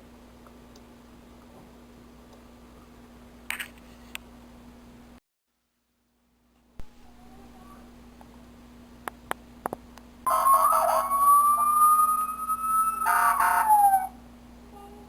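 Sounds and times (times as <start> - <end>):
toy electronic siren: 10.3 - 14.1.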